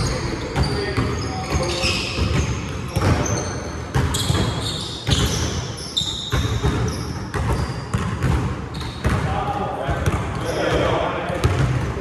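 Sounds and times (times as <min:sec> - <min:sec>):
basketball bouncing: 0:00.0 - 0:05.6, 0:06.2 - 0:09.3, 0:09.9 - 0:12.0
shoe squeaks: 0:00.0 - 0:08.0, 0:08.7 - 0:09.1, 0:10.4 - 0:10.8.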